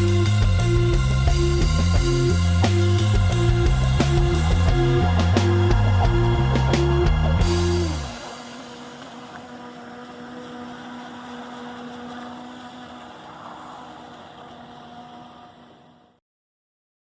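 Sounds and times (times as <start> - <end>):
rushing water: 0.0 - 16.1
electric motor hum: 0.0 - 16.2.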